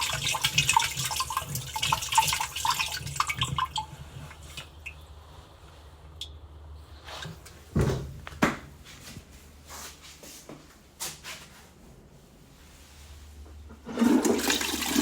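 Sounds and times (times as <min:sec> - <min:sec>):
dull handling knocks: 0:07.7 - 0:08.7.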